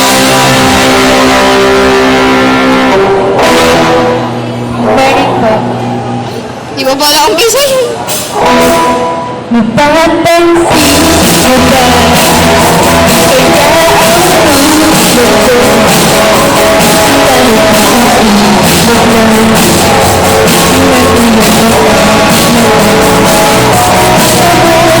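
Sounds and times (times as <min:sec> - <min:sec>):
drum kit: 0:00.0 - 0:04.2, 0:07.5 - 0:09.5, 0:10.5 - 0:25.0
bass guitar: 0:00.0 - 0:25.0
electric guitar: 0:00.0 - 0:25.0
person singing: 0:07.7 - 0:25.0.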